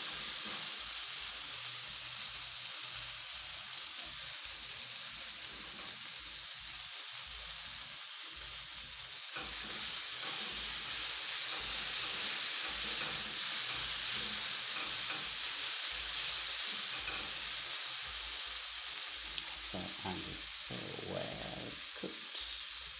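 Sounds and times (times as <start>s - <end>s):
fish sizzling in a pan: 0.0s - 22.9s.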